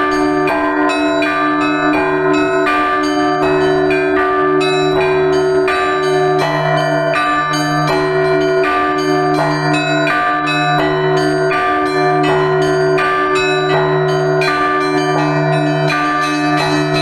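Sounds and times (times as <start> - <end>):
deep low bell: 0.0 - 17.0
small church bells pealing: 0.0 - 17.0.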